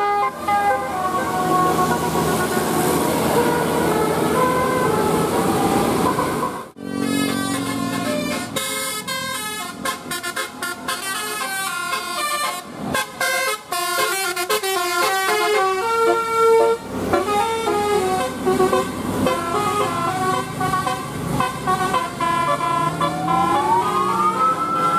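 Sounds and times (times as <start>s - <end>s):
rising siren-like wail: 0.0s - 6.9s, 22.0s - 24.9s
multi-tone bus horns playing tune: 0.0s - 24.9s.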